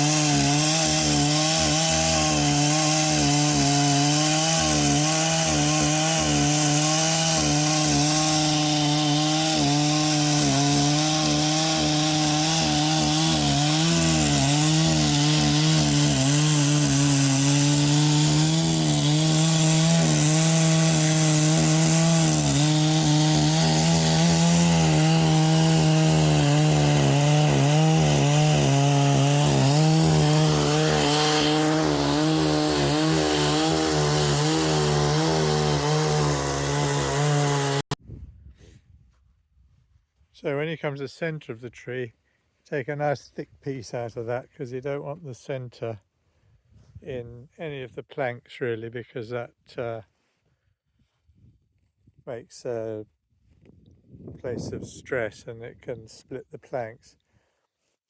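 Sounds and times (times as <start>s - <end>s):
chainsaw cutting wood: 0.0s - 38.0s.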